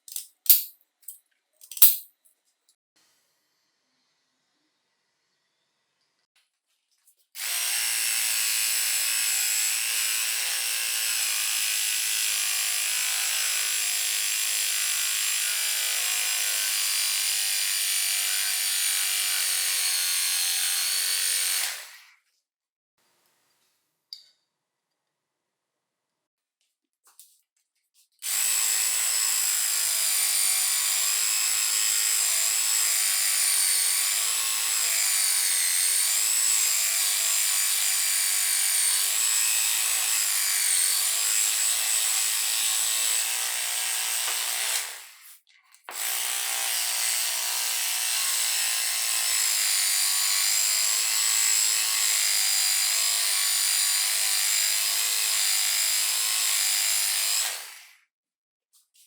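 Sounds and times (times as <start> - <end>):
cordless saw cutting wood: 7.4 - 22.2, 28.2 - 58.1.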